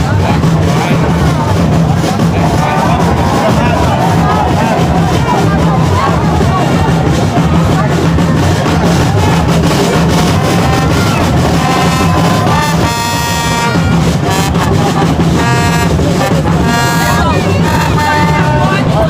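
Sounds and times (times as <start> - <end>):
loud music with drums and brass: 0.0 - 19.0
held horn-like tone: 9.9 - 19.0.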